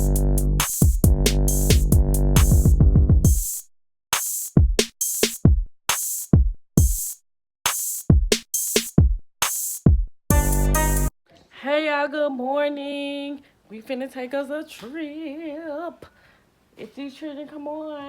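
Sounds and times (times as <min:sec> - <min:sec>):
electronic music with drum machine: 0:00.0 - 0:03.6, 0:04.2 - 0:11.1.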